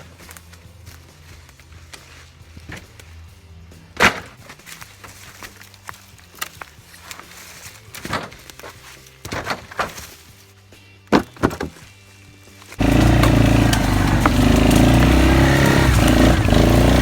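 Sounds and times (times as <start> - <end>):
firewood logs knocking: 12.8 - 17.0.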